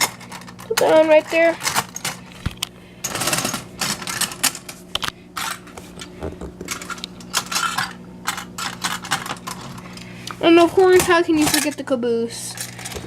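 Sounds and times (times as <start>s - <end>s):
toy train cars clattering on track: 10.6s - 11.8s.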